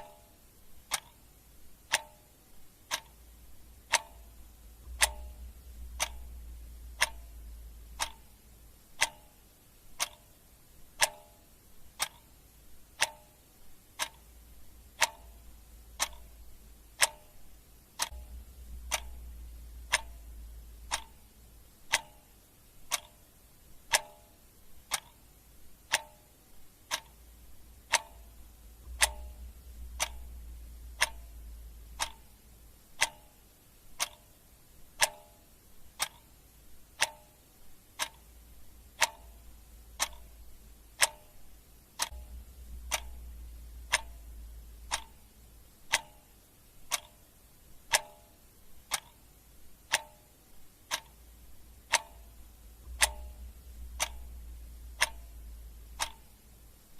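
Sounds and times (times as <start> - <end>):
clock ticking: 0.0 - 56.9
faint low hum: 0.0 - 56.9.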